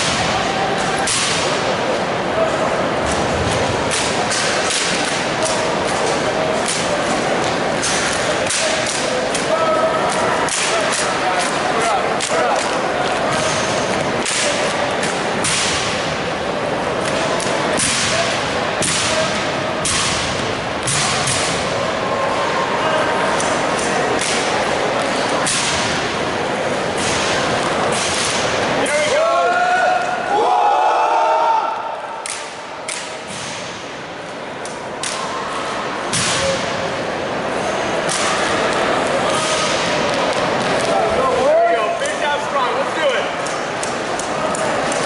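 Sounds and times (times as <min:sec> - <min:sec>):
background noise: 0:00.0 - 0:45.0
murmur of voices: 0:00.0 - 0:45.0
rifles slapped and struck: 0:01.0 - 0:01.6, 0:03.9 - 0:06.9, 0:07.8 - 0:09.5, 0:14.2 - 0:16.0, 0:19.8 - 0:21.6, 0:25.4 - 0:26.0, 0:32.2 - 0:33.7, 0:34.6 - 0:35.2.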